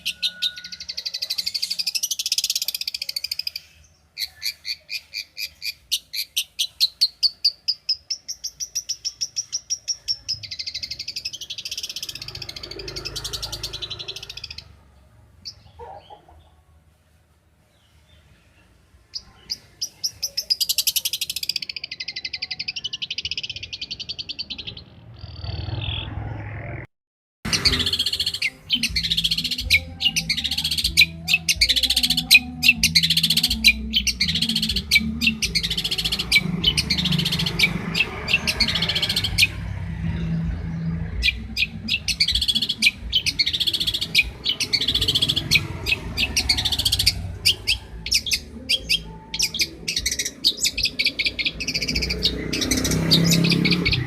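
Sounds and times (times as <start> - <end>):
bird sharp repeated notes: 0.0 - 14.7, 27.5 - 54.0
bird singing buzzy trill: 0.0 - 14.8, 27.5 - 54.0.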